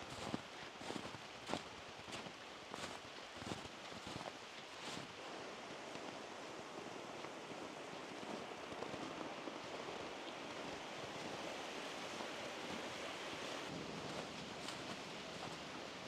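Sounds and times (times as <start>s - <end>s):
flowing water rushing: 0.0s - 16.0s.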